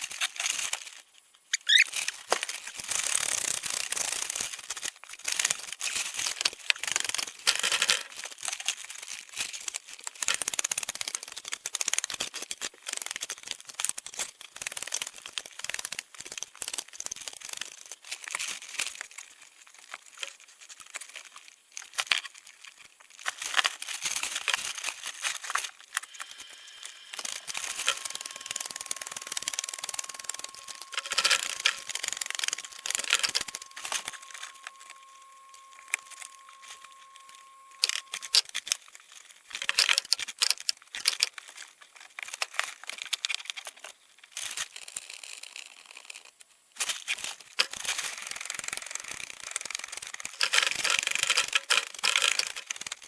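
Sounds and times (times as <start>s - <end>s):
crinkling and rustling: 0.0s - 53.0s
faint high tone: 26.0s - 38.5s.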